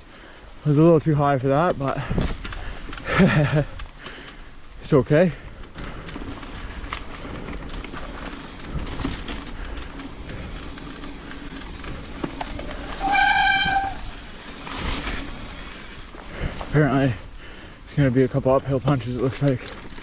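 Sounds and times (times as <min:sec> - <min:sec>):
bike tyres rolling on dirt: 0:00.0 - 0:20.0
disc brake squeal: 0:12.7 - 0:14.1.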